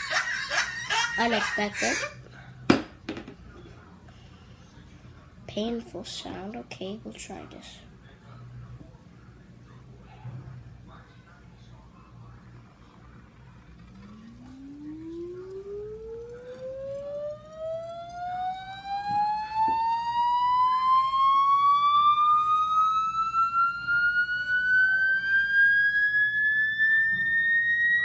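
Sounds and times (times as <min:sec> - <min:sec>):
tone rising in pitch: 0:14.0 - 0:28.0.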